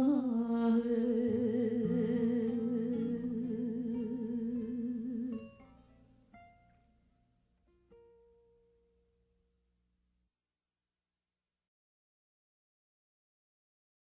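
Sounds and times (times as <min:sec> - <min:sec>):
soft plucked notes: 0:00.0 - 0:09.4.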